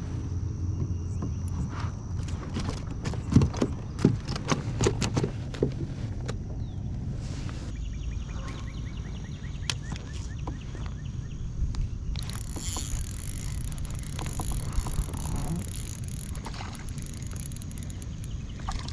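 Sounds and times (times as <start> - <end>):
faint ticks: 11.7 - 18.9.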